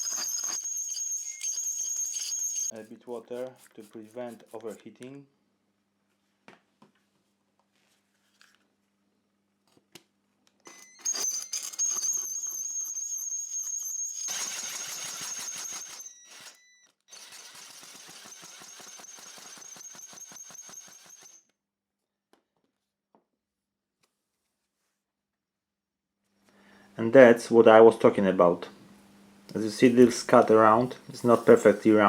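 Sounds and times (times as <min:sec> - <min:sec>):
power drill motor whine: 0:14.2 - 0:21.4.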